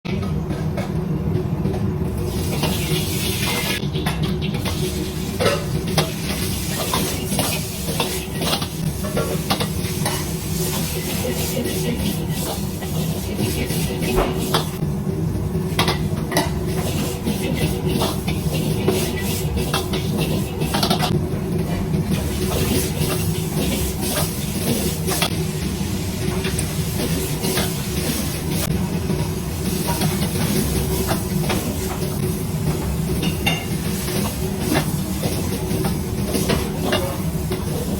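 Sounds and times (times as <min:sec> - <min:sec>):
food sizzling in a pan: 0:02.2 - 0:03.8, 0:04.5 - 0:14.8, 0:15.6 - 0:21.1, 0:22.0 - 0:37.9.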